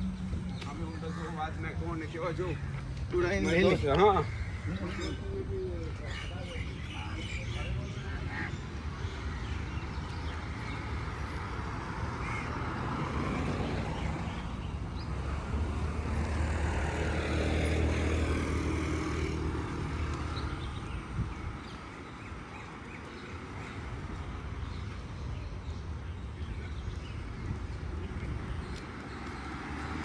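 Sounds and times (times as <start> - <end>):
motor vehicle passing: 9.8 - 21.6, 27.8 - 30.0.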